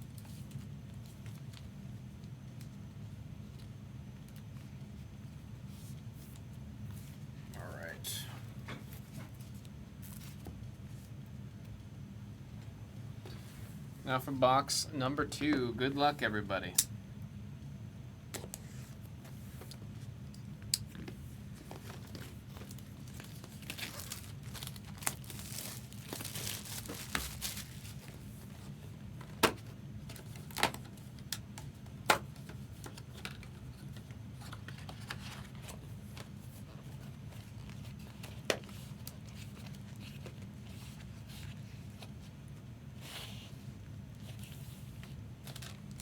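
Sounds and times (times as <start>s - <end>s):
steady low hum: 0.0s - 46.0s
foil wrappers crinkling and tearing: 21.9s - 28.2s, 45.4s - 46.0s.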